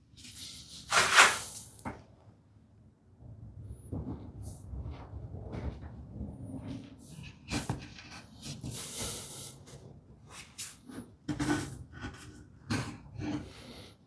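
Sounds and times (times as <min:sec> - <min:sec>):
soft rubbing: 0:00.8 - 0:01.6
light knocks and scrapes of boards: 0:00.9 - 0:01.6.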